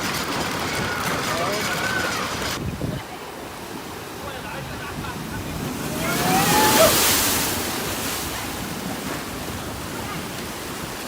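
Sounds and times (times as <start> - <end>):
rushing noise: 4.8 - 8.6.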